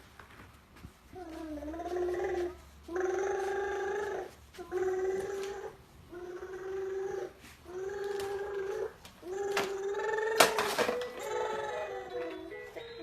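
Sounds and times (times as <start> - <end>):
girl making wordless tones: 1.2 - 10.4.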